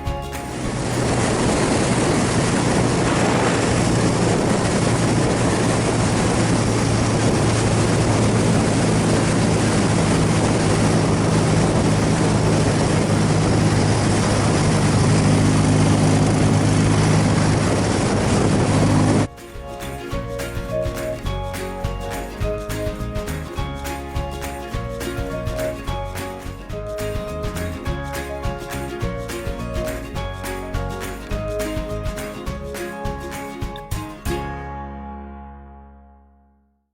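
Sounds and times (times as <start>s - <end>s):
wind rushing on microphone: 0.0s - 23.5s
motorcycle engine running: 0.1s - 19.3s.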